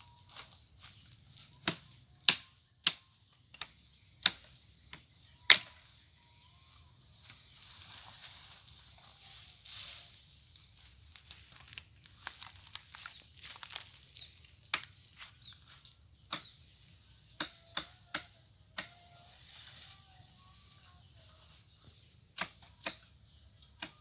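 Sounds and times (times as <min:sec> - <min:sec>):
insects singing: 0:00.0 - 0:24.0
chopping blows on wood: 0:01.6 - 0:03.0, 0:03.6 - 0:05.8, 0:16.3 - 0:16.6, 0:17.4 - 0:19.0.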